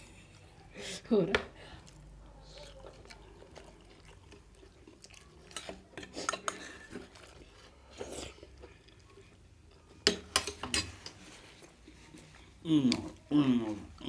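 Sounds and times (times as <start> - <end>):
tableware clinking and scraping: 10.1 - 11.2.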